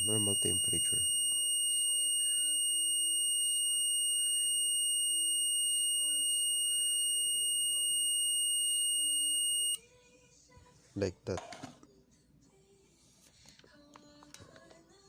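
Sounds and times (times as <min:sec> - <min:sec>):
continuous high-pitched alarm buzzer: 0:00.0 - 0:09.8.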